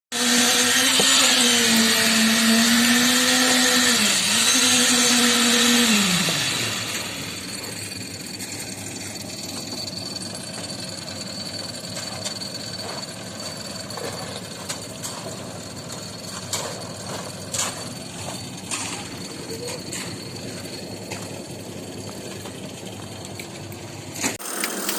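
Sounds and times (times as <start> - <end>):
machinery engine rumbling: 6.2 - 24.9.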